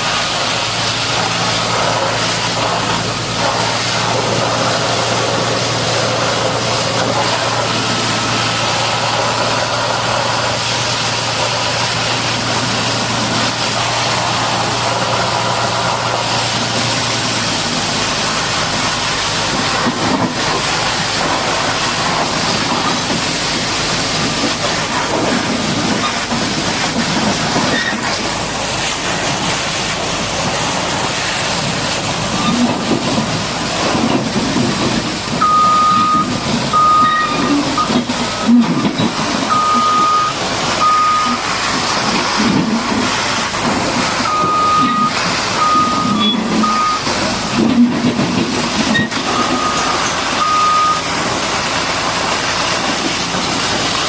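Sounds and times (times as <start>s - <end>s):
heavy machinery rumbling: 0.0s - 54.0s
high-pressure water jet hissing: 0.0s - 54.0s
reversing alarm beeping: 35.4s - 38.1s, 39.4s - 41.5s, 44.2s - 47.3s, 48.9s - 51.2s.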